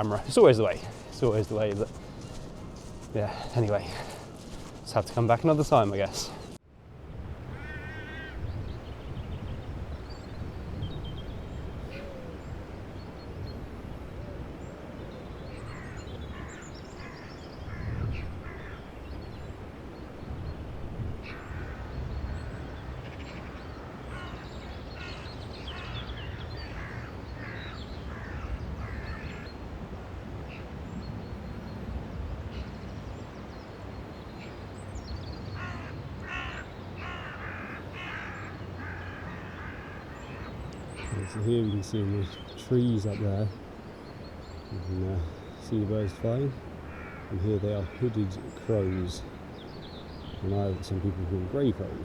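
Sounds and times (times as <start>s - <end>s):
crows cawing: 7.5s - 8.5s, 15.6s - 19.0s, 21.2s - 29.6s, 35.5s - 41.4s, 46.7s - 49.8s.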